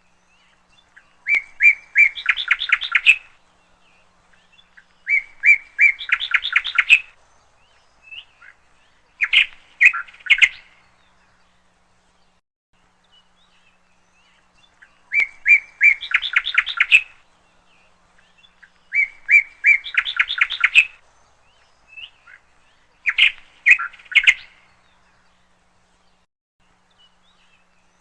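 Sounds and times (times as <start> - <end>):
songbird trilling: 0.2 - 11.6, 13.0 - 25.5
sharp bird calls: 0.2 - 11.7, 13.2 - 26.2.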